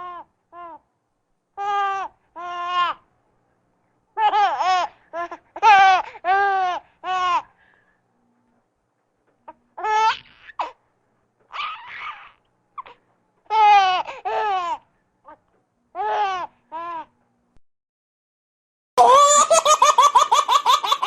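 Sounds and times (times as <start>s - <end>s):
baby laughing: 19.0s - 21.0s.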